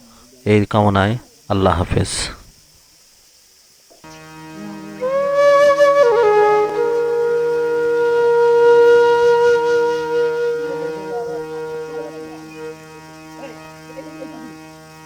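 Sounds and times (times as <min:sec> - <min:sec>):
flute-like wind instrument: 0:04.1 - 0:15.0
steady drone: 0:04.1 - 0:15.0.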